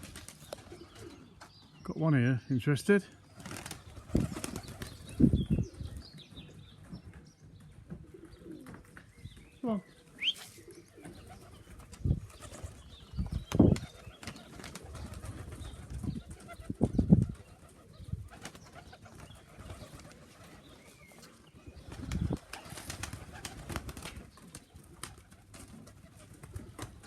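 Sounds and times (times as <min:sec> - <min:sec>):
pigeons cooing: 0:00.0 - 0:01.4, 0:03.1 - 0:06.9, 0:07.6 - 0:27.0
faint outdoor background: 0:00.0 - 0:27.0.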